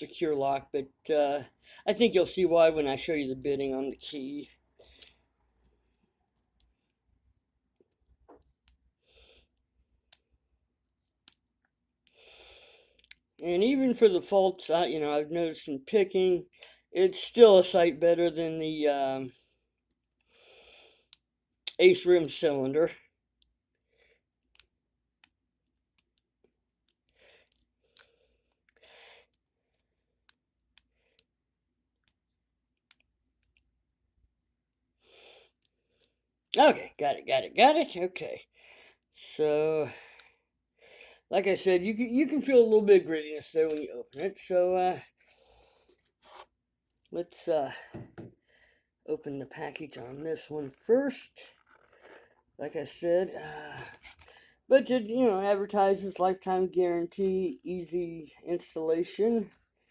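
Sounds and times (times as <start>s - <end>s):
lock pick clicking in a lock: 24.5s - 25.4s.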